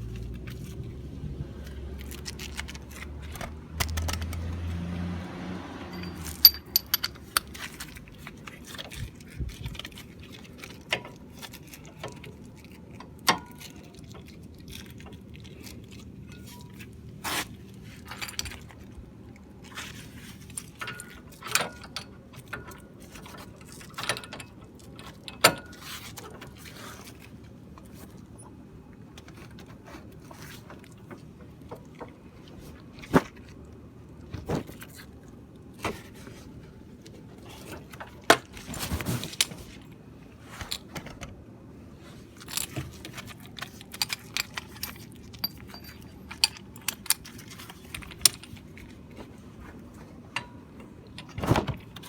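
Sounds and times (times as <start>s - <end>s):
metal tools clinking and scraping: 5.8s - 8.0s, 42.3s - 48.7s
rattling clatter: 5.9s - 7.6s.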